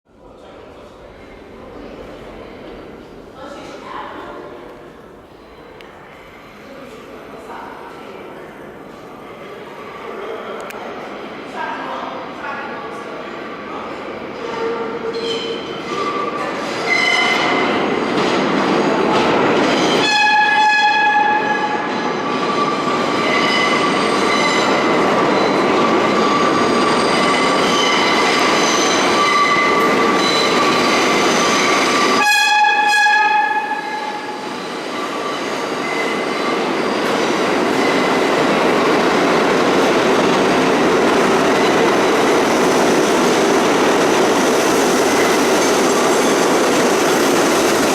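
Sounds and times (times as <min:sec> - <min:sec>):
subway train rumbling past: 0:00.1 - 0:47.9
train horn blasts: 0:20.0 - 0:21.9, 0:32.1 - 0:34.4.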